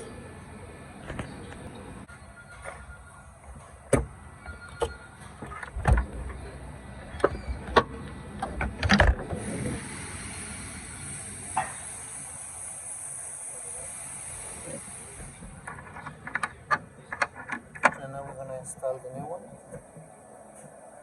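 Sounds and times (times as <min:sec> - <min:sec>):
steady high hiss: 0:09.4 - 0:15.8.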